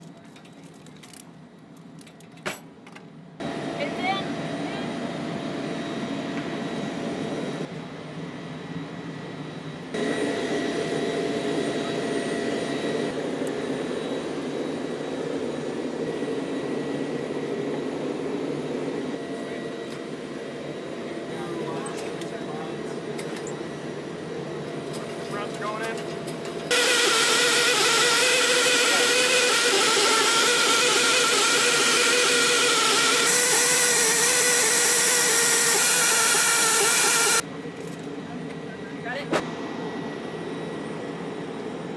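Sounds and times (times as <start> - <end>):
jet turbine rushing: 3.4 - 37.5
ammunition loader whine: 9.6 - 37.4.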